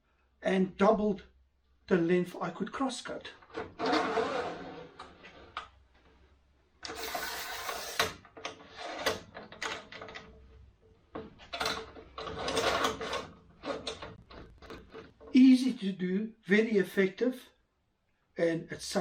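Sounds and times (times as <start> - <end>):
metal scraping slide: 3.6 - 5.6, 6.8 - 9.2
metal clicks and rattles: 8.0 - 10.5, 11.1 - 15.3.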